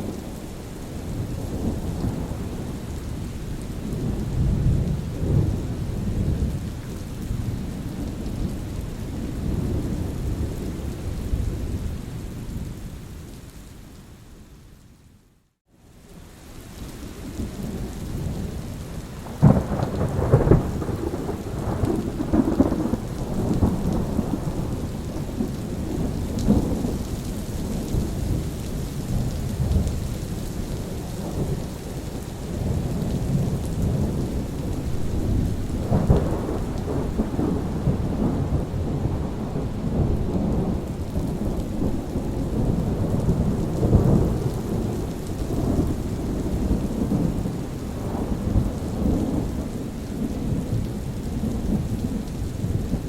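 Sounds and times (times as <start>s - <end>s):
steady rain: 0.0s - 53.0s
rolling thunder: 19.2s - 30.2s, 32.5s - 53.0s.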